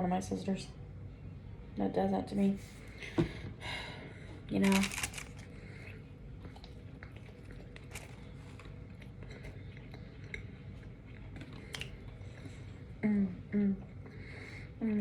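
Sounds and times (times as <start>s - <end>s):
person chewing a sandwich: 4.7s - 13.0s.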